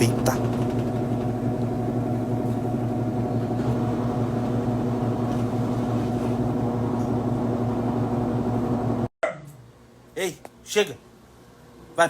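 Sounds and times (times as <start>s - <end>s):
washing machine spinning: 0.0s - 9.1s.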